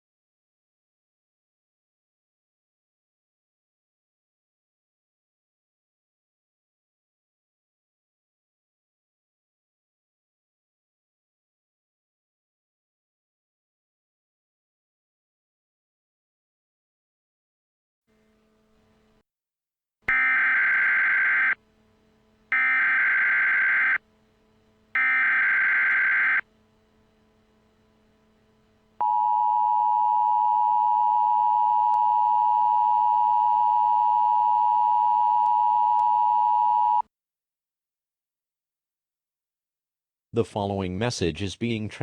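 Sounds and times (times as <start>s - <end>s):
harsh two-tone attention signal: 20.1s - 21.6s, 22.5s - 24.0s, 25.0s - 26.5s
screeching digital data bursts: 20.1s - 21.6s, 22.5s - 24.0s, 25.0s - 26.5s.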